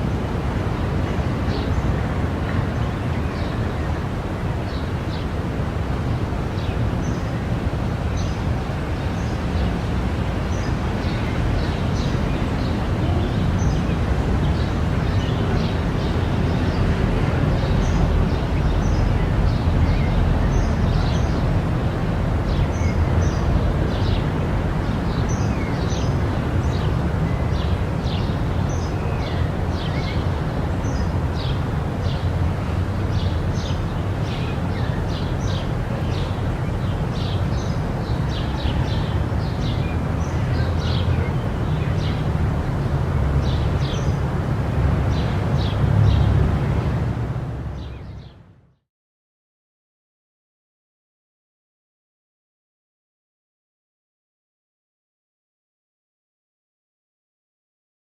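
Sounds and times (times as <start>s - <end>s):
city traffic rumble: 0.0s - 48.7s.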